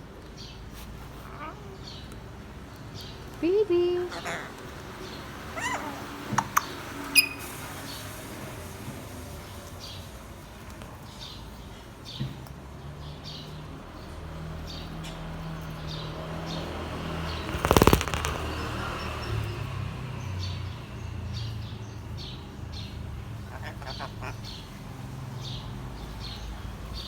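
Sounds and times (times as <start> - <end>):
high bird chirps: 4.0 - 8.0, 16.0 - 19.7
loud flurry of rapid beats: 17.4 - 18.5.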